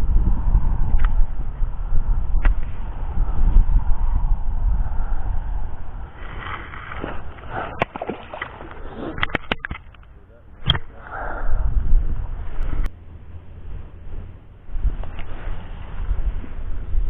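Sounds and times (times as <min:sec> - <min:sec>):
wind buffeting microphone: 0:00.0 - 0:17.0
sharp clicks and knocks: 0:09.2 - 0:10.9.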